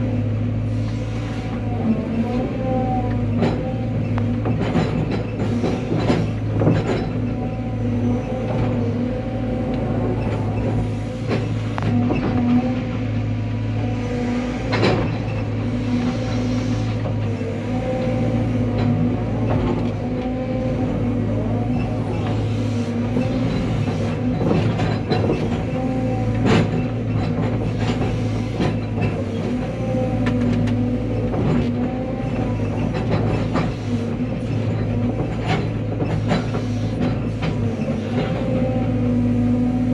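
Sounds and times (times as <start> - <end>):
excavator diesel engine running: 0.0 - 39.9
metallic knocks and clanks: 3.3 - 7.6.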